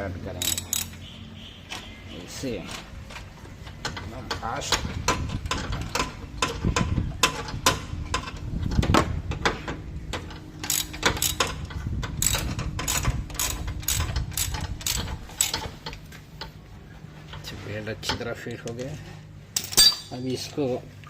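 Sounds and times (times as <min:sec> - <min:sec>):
ratchet wrench clicking: 0:00.4 - 0:01.0, 0:10.6 - 0:11.6, 0:12.2 - 0:16.0.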